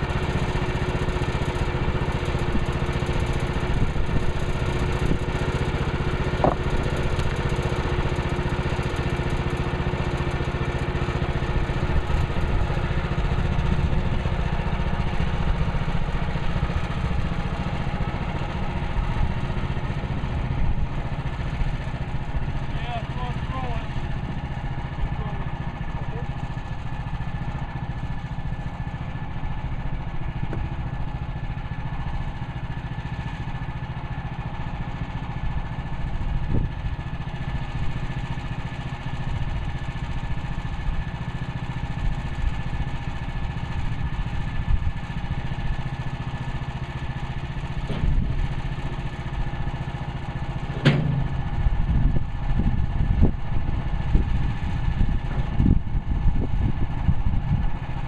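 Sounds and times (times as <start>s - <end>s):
sawmill engine running: 0.0s - 58.0s
sharp knocks: 50.7s - 51.3s.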